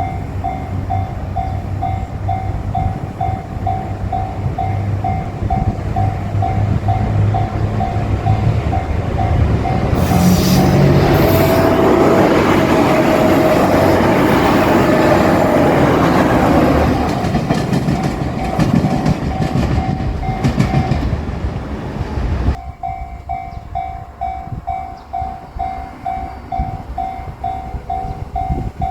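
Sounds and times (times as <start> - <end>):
wheels clattering over rail joints: 0.0 - 22.5
diesel train passing: 0.0 - 28.9.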